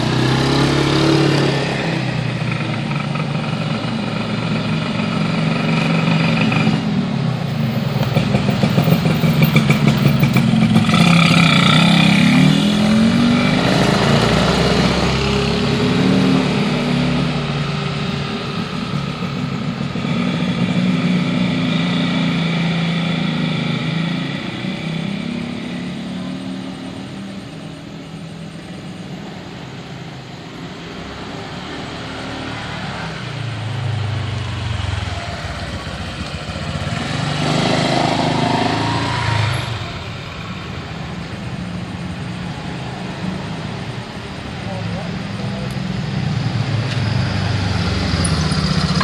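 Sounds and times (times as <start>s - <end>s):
cars passing: 0.0s - 49.0s
motorcycles passing: 0.0s - 49.0s.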